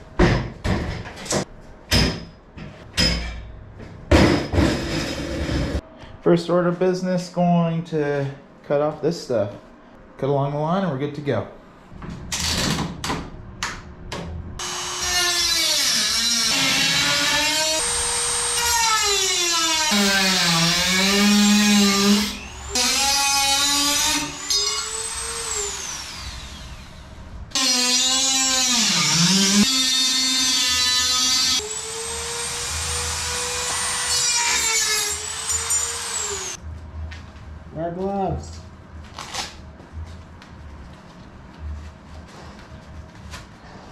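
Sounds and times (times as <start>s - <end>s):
rotary tool cutting metal: 27.6s - 36.6s.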